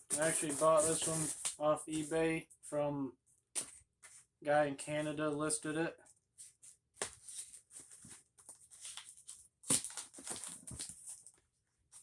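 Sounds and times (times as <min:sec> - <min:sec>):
packaging crinkling: 0:07.2 - 0:11.4.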